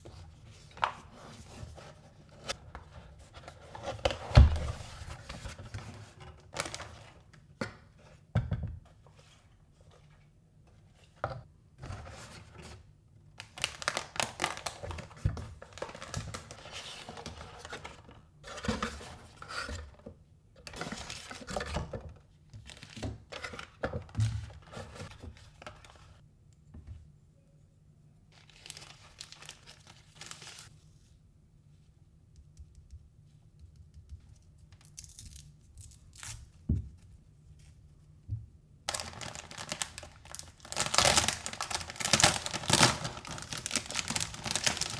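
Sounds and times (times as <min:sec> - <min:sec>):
plastic crinkling and tearing: 0:13.4 - 0:15.0, 0:28.4 - 0:30.7, 0:38.9 - 0:44.9.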